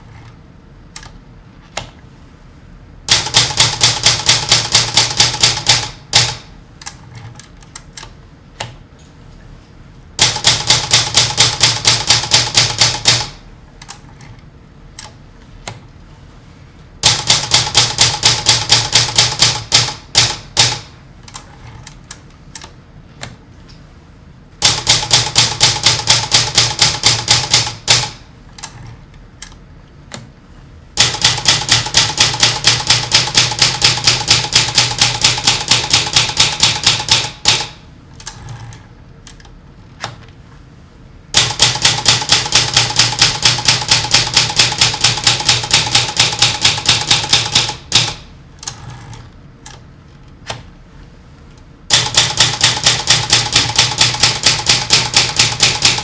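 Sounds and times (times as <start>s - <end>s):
typewriter keys clacking: 3.1s - 6.4s, 10.2s - 13.4s, 17.0s - 20.9s, 24.6s - 28.2s, 31.0s - 37.8s, 41.4s - 48.2s, 51.9s - 56.0s.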